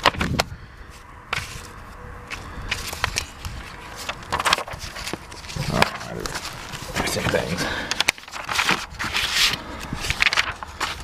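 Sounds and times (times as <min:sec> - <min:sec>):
wind rumble on microphone: 0:00.0 - 0:00.7
paper pages rustling: 0:00.0 - 0:11.0.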